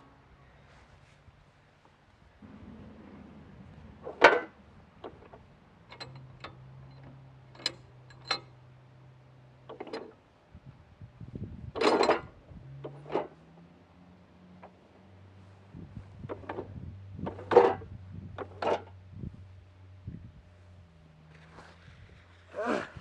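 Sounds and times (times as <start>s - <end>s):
metal clanks and knocks: 2.4s - 8.5s, 11.7s - 13.4s, 16.2s - 19.0s.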